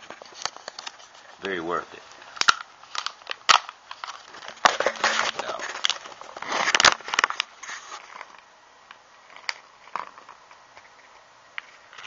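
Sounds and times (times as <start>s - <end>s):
handling rustling and crackling: 0.0s - 8.4s.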